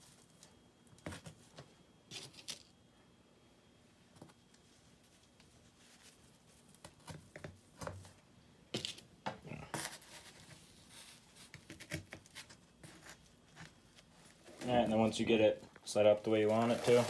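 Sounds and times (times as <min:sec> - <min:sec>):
feathers rustling: 0:16.3 - 0:17.0.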